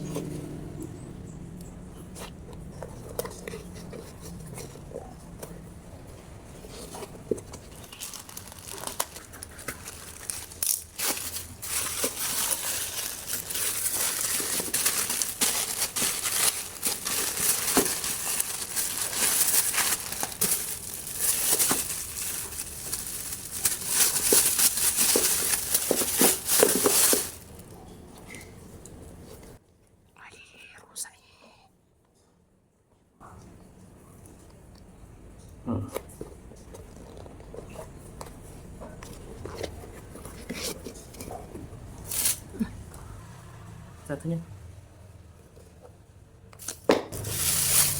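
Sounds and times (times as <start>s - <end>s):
packaging crinkling and rustling: 6.5s - 28.5s, 36.5s - 42.6s, 46.6s - 47.9s.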